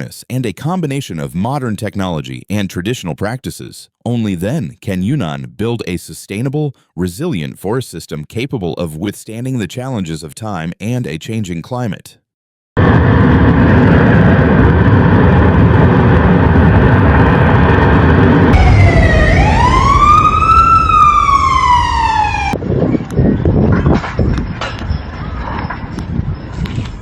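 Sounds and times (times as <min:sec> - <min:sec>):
loud rushing noise: 0:12.8 - 0:22.7
emergency siren wailing: 0:14.6 - 0:23.2
knocks and clatter: 0:23.6 - 0:26.1.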